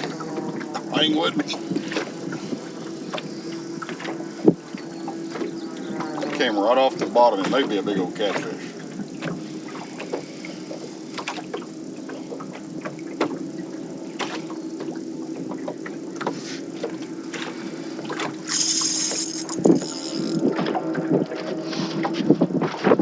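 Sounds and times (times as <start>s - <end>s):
fishing reel drag buzzing: 0.0s - 22.2s
trolling motor humming: 0.0s - 23.0s
fishing tackle clicks and knocks: 14.2s - 21.5s.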